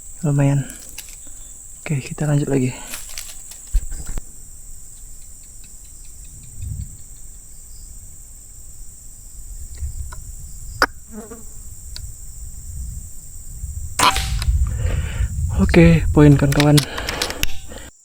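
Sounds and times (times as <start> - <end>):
insects droning: 0.0 - 18.0
faint ticks: 2.9 - 7.5, 11.9 - 12.2, 16.4 - 17.9
low rumbling: 6.0 - 16.8
sharp click: 14.0 - 14.6, 16.4 - 17.8.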